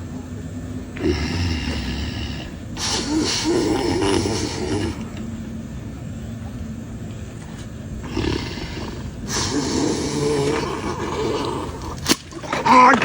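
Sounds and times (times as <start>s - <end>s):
person snoring loudly: 0.9s - 5.2s, 8.0s - 12.0s
short snort: 1.0s - 5.2s, 8.0s - 12.0s.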